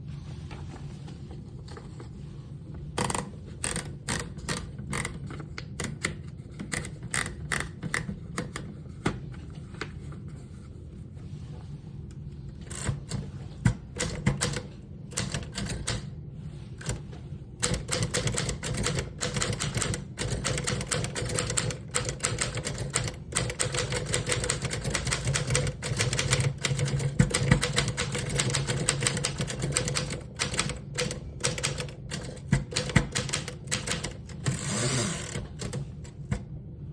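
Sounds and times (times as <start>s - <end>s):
manual typewriter keystrokes: 3.0s - 8.7s, 12.6s - 16.1s, 16.8s - 36.5s.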